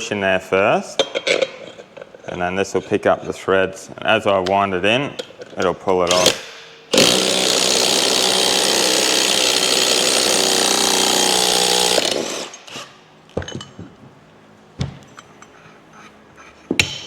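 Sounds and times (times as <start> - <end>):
power tool running: 6.9 - 12.9.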